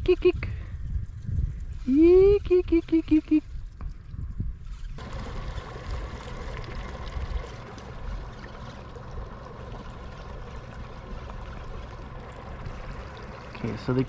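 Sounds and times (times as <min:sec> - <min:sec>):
steady low rumble: 0:00.0 - 0:14.0
water lapping against boat hull: 0:05.0 - 0:14.0.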